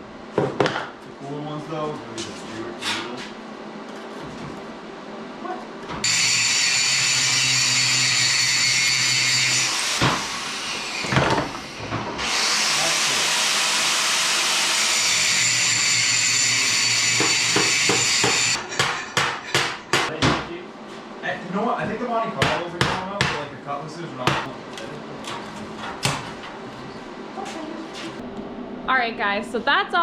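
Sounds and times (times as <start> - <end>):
power drill boring steel: 6.0 - 18.8.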